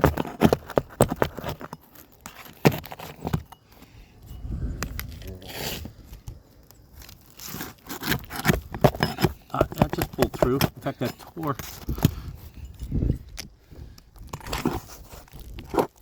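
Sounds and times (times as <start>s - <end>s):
shingles tearing: 0.0s - 3.5s, 6.9s - 12.3s
metal tool knocking and scraping: 0.0s - 5.0s, 7.5s - 13.4s.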